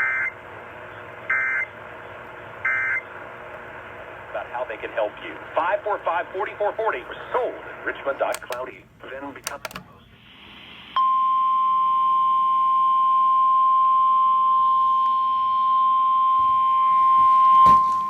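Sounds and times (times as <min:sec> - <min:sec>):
click: 0:08.3 - 0:08.6, 0:09.4 - 0:09.9
high warning alarm tone: 0:11.0 - 0:18.0.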